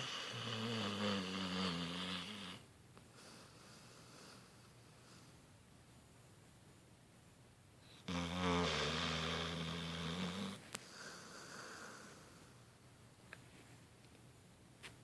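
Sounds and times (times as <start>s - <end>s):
dog snoring: 0.0s - 2.7s, 8.0s - 12.4s.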